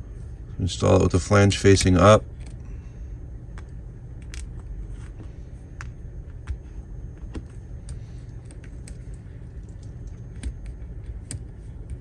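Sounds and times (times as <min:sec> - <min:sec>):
low steady hum: 0:00.0 - 0:12.0
small metal parts clicking: 0:07.8 - 0:12.0.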